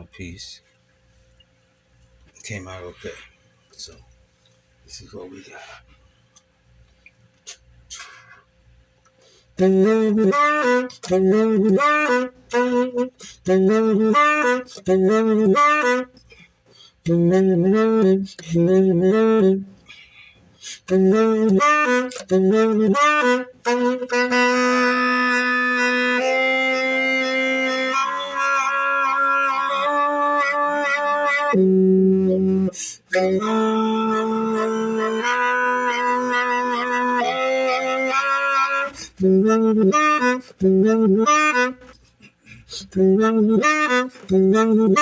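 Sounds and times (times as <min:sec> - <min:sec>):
reedy wind instrument melody: 0:09.2 - 0:45.0
held chords: 0:09.6 - 0:16.4, 0:20.8 - 0:45.0.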